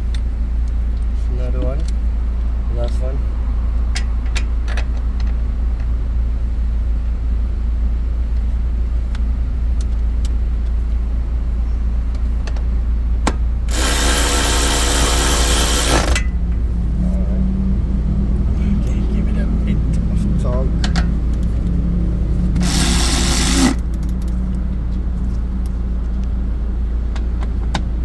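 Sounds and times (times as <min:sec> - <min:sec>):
car engine idling: 0:00.0 - 0:28.0
loud buzzing: 0:13.7 - 0:16.3, 0:22.6 - 0:23.9.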